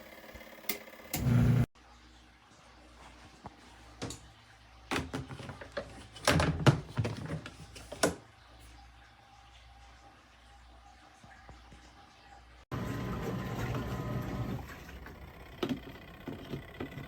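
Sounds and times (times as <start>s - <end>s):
hard objects knocking and clattering: 4.9s - 8.2s.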